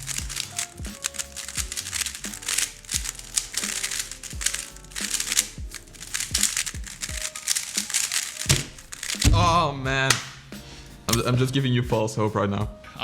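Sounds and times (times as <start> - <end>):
puzzle cubes clicking: 0.0 - 9.5
electronic music with kick drum: 0.1 - 1.0, 5.6 - 5.8.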